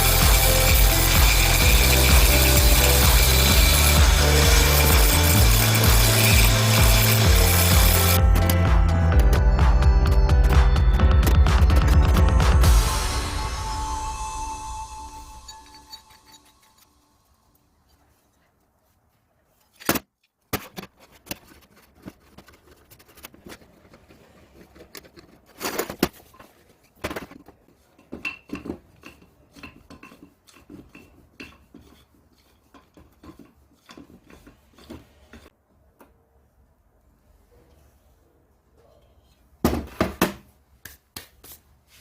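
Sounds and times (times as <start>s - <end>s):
metal pieces clinking and knocking: 0.0s - 8.2s.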